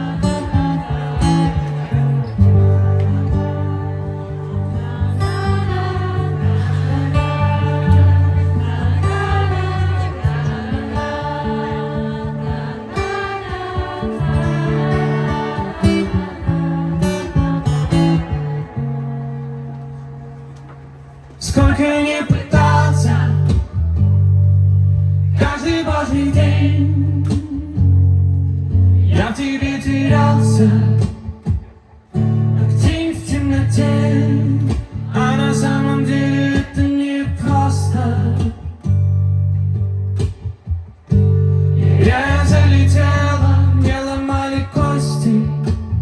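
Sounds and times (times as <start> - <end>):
sustained low bass notes: 0.0 - 21.8
acoustic guitar playing: 0.0 - 46.0.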